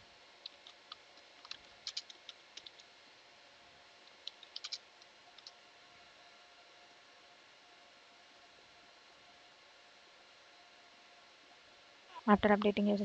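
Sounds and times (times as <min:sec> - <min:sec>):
keyboard keystrokes clicking: 0:00.4 - 0:02.8, 0:04.2 - 0:04.8.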